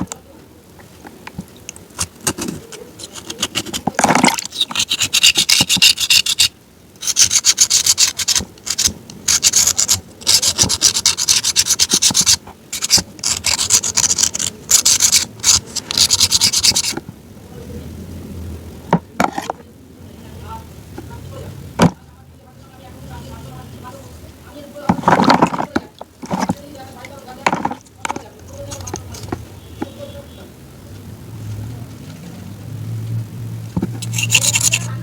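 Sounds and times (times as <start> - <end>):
rapid crunching and rasping: 0.0 - 17.1, 24.8 - 35.0.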